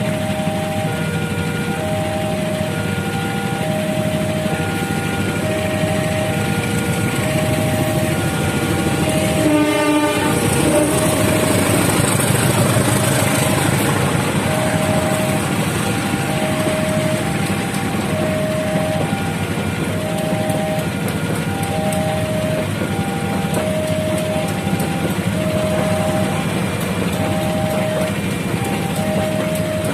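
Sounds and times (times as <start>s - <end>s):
level crossing two-tone alarm: 0.0s - 29.9s
train wheels rumbling on rails: 0.0s - 29.9s
train horn: 3.7s - 13.9s.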